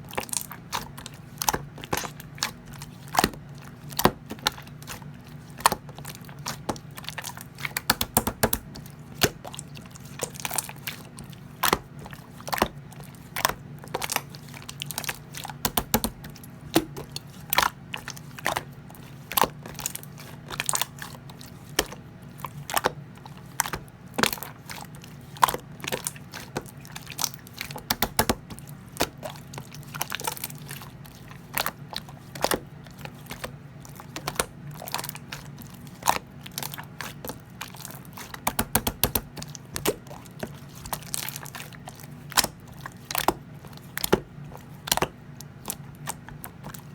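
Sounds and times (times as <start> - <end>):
slime popping and clicking: 7.7 - 8.8, 38.5 - 40.0.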